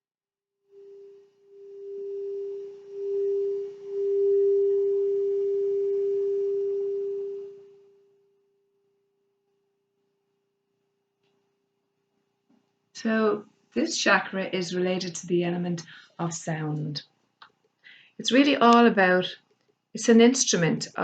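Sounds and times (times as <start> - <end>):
singing bowl ringing: 0.7 - 8.4.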